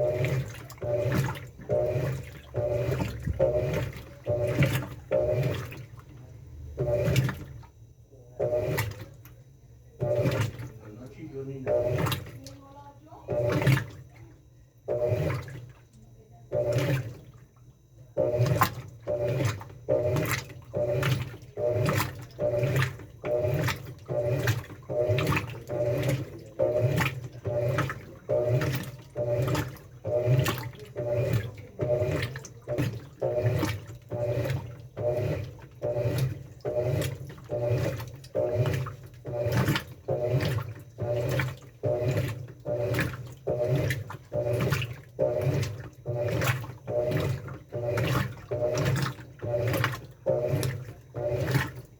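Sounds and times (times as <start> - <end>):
water swishing: 0.0 - 7.8, 8.4 - 9.3, 9.9 - 51.9
washing machine motor hum: 0.0 - 51.9.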